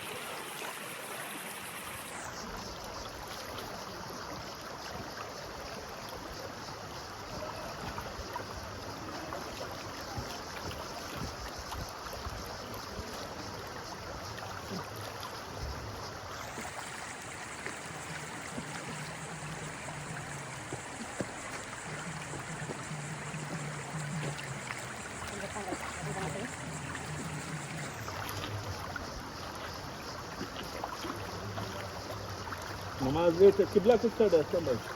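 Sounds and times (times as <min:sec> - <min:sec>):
mountain stream rushing: 0:00.0 - 0:03.0, 0:13.8 - 0:34.9.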